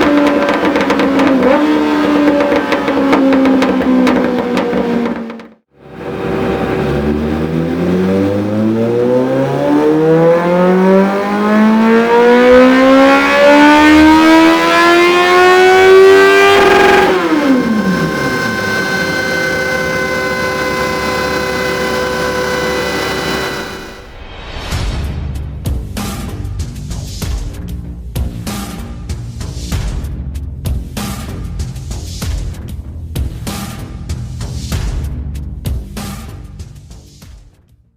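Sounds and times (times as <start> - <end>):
motorcycle engine revving: 0.0 - 24.1.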